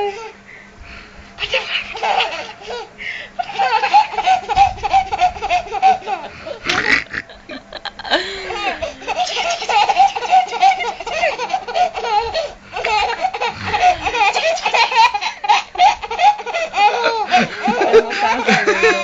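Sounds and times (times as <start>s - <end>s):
baby laughing: 1.4s - 7.4s, 8.1s - 19.0s.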